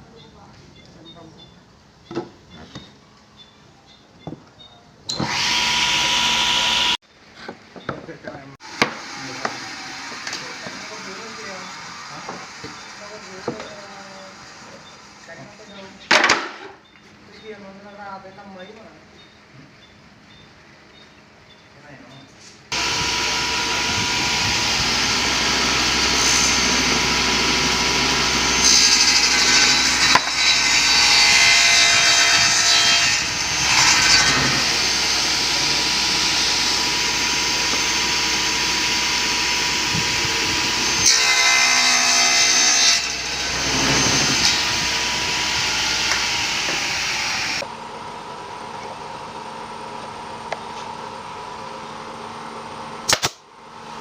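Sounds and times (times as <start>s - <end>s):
power tool motor whining: 5.1s - 7.0s, 22.7s - 47.6s.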